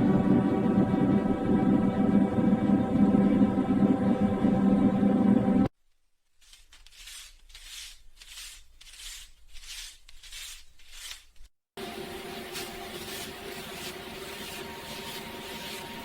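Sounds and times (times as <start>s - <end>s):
banknotes being flipped: 6.3s - 11.6s.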